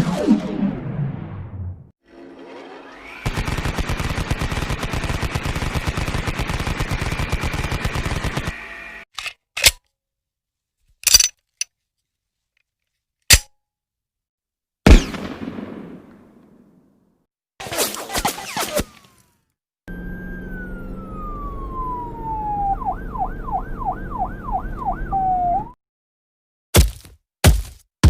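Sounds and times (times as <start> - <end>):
automatic gunfire: 3.3 - 8.6
single gunshots: 14.9 - 16.6.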